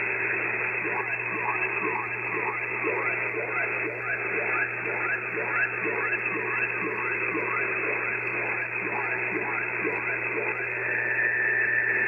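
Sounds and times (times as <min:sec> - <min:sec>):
falling-pitch radio chirps: 0:00.9 - 0:12.0.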